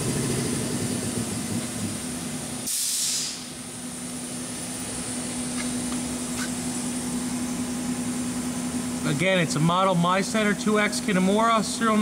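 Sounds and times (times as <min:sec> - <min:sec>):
machining center humming: 0:00.0 - 0:02.7, 0:03.3 - 0:12.0
short loud hiss: 0:02.6 - 0:03.5.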